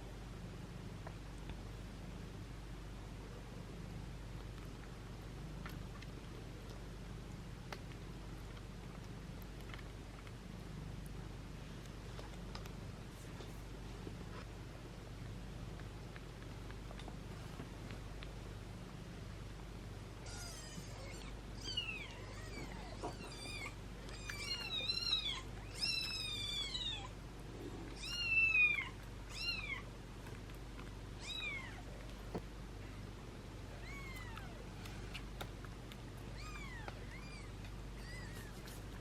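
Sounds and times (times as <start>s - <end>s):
kittens mewing: 20.2s - 29.9s, 36.3s - 38.9s.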